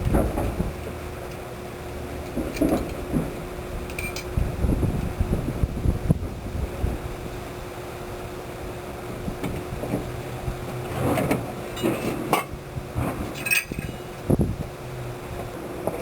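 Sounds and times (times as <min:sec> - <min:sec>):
steady low hum: 0:00.0 - 0:16.0
tools knocking and clinking: 0:03.9 - 0:04.3, 0:13.4 - 0:14.1.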